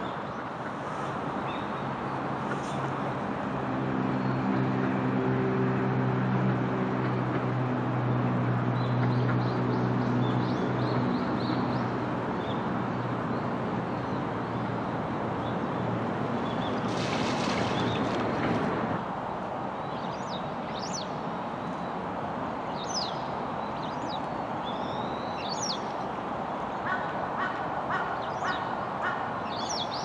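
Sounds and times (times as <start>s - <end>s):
low engine hum: 0.4s - 19.6s.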